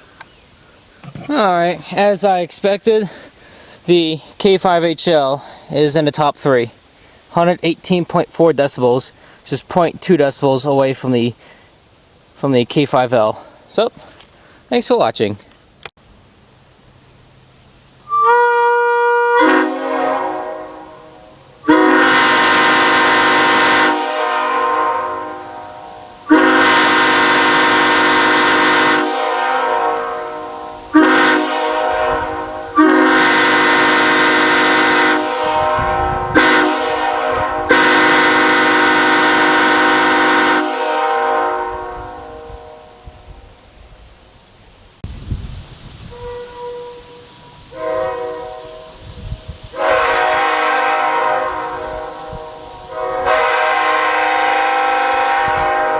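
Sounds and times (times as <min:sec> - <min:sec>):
locomotive air horn blasts: 0:18.0 - 0:43.3, 0:46.1 - 0:55.9.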